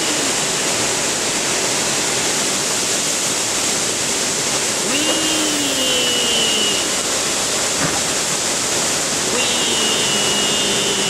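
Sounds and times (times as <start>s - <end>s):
heavy storm rain: 0.0s - 11.0s
long falling wail: 9.3s - 11.0s.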